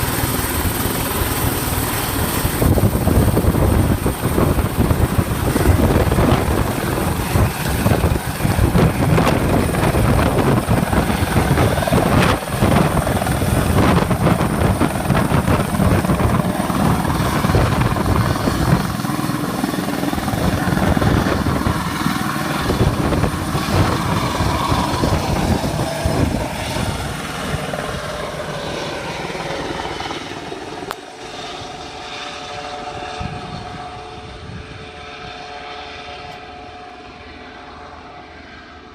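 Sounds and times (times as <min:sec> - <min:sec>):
helicopter rotor and engine: 0:00.0 - 0:38.9.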